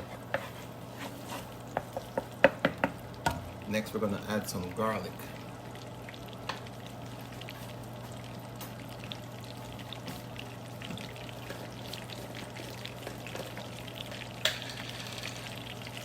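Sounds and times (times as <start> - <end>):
butter sizzling in a hot pan: 5.5 - 16.0.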